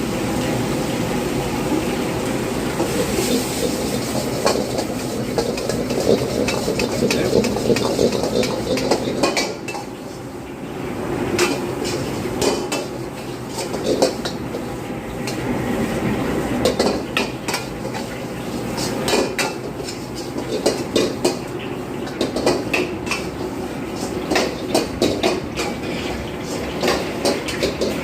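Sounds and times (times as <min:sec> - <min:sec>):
metal spatula scraping a pan: 0:02.9 - 0:09.9.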